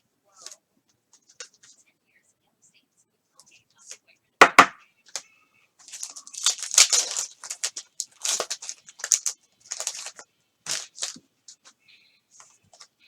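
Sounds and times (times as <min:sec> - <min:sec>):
wrapper tearing and crinkling: 0:05.8 - 0:11.2.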